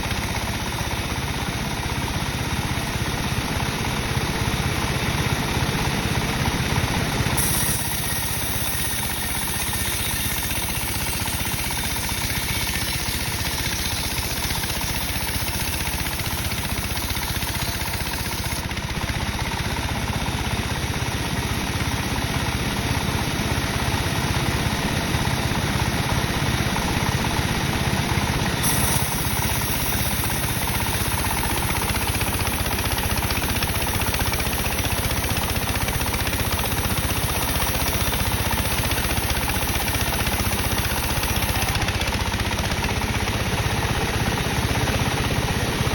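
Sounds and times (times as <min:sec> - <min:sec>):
saw cutting wood: 0:07.4 - 0:18.7, 0:28.5 - 0:43.2
higher hiss: 0:28.6 - 0:32.6.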